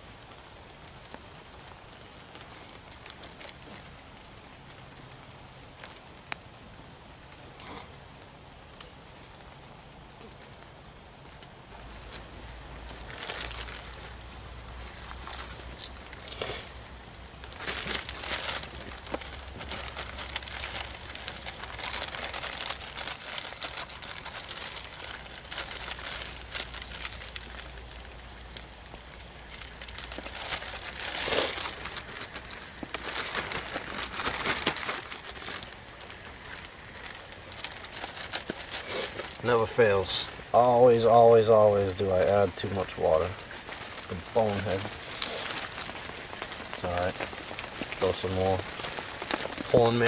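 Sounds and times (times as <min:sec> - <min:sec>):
campfire crackling: 0:00.0 - 0:50.0
pork sizzling in a skillet: 0:15.6 - 0:23.2, 0:38.8 - 0:39.5, 0:44.9 - 0:48.1.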